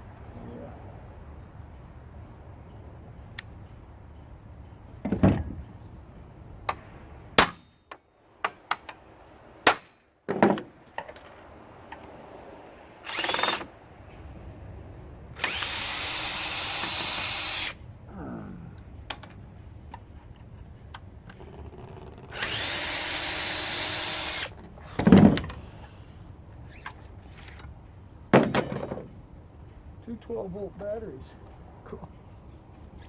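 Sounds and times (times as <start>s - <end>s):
parts knocking and clanking: 5.0s - 5.8s, 9.7s - 12.1s, 24.5s - 25.6s, 26.9s - 29.2s
power drill running: 13.0s - 13.7s, 15.4s - 17.8s, 22.3s - 24.5s.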